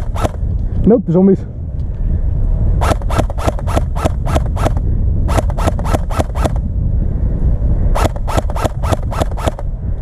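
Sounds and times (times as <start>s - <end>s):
airsoft gun shots: 0.0s - 0.4s, 2.8s - 6.6s, 7.9s - 9.6s
low rumble: 0.0s - 10.0s.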